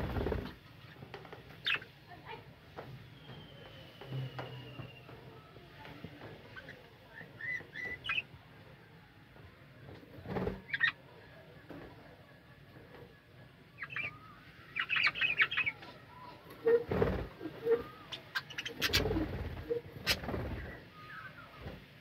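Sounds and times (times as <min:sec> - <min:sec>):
budgerigars chirping: 0:18.1 - 0:19.2.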